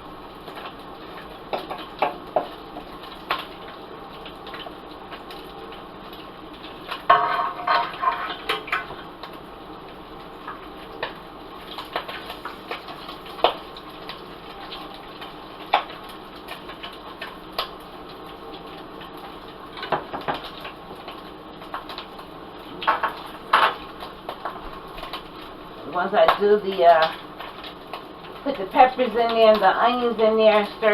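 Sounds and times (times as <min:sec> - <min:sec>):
food sizzling in hot oil: 0:00.0 - 0:30.9
oil popping and crackling: 0:00.0 - 0:30.9
utensil clattering on pan: 0:07.1 - 0:09.0.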